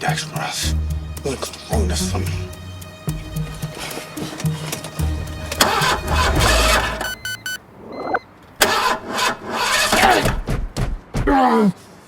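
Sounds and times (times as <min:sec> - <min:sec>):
car engine starting and revving: 0:04.6 - 0:10.4
quick electronic beeps: 0:06.5 - 0:08.3.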